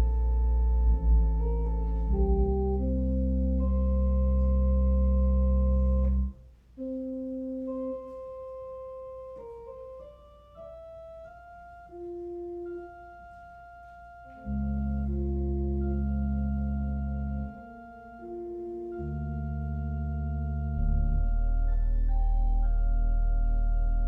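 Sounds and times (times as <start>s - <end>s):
organ playing slow music: 0.0s - 24.0s.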